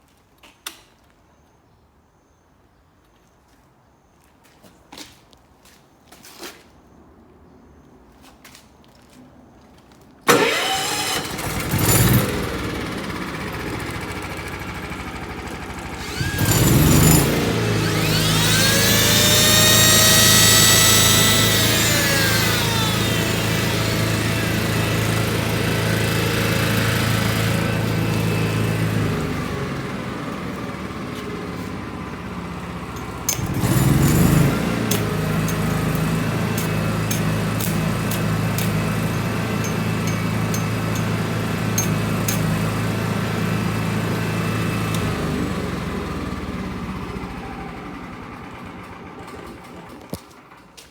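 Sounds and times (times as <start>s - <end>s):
generator engine running: 10.3s - 50.8s.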